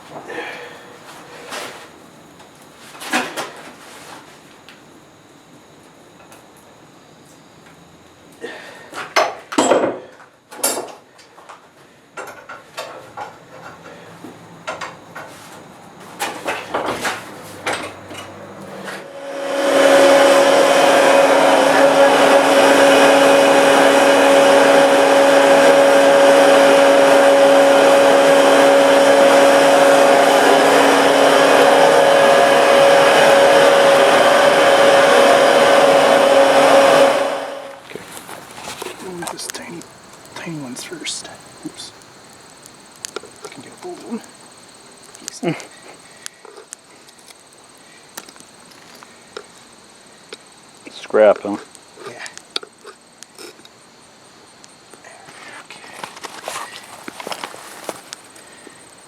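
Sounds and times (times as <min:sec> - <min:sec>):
air blower running: 0:16.2 - 0:41.9.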